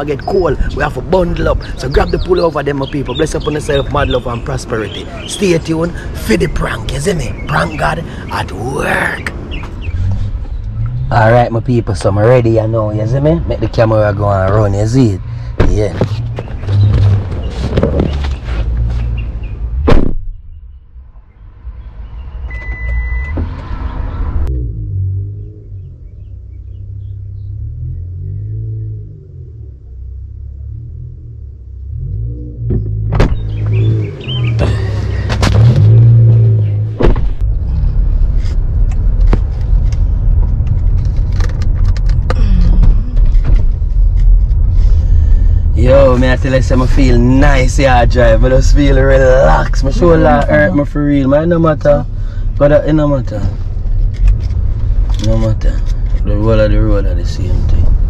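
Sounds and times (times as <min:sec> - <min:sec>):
car engine and road rumble: 0:00.0 - 0:58.0
low hum: 0:18.6 - 0:50.9
sharp knock: 0:19.8 - 0:20.4
loud sharp slam: 0:19.8 - 0:20.5
high beep: 0:22.4 - 0:23.4.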